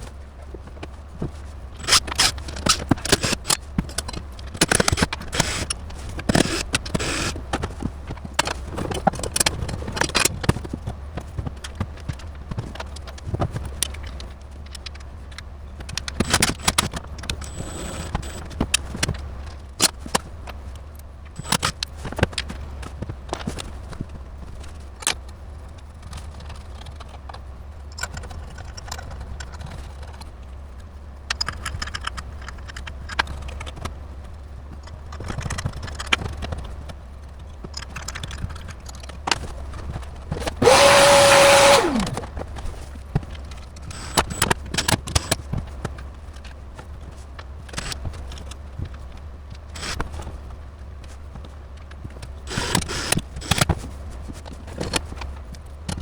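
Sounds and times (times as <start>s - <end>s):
small electric motor whirring: 1.8s - 3.6s, 4.6s - 7.4s, 16.1s - 18.5s, 21.4s - 21.7s, 40.4s - 42.3s, 43.9s - 45.4s, 49.8s - 50.2s, 52.5s - 53.7s
hardware and cables rattling: 1.8s - 10.6s, 15.9s - 19.0s, 39.4s - 45.8s, 52.2s - 53.9s.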